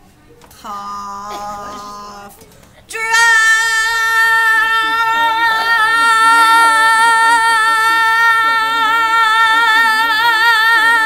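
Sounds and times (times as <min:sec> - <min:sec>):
girl singing a long held note: 0:03.0 - 0:11.0.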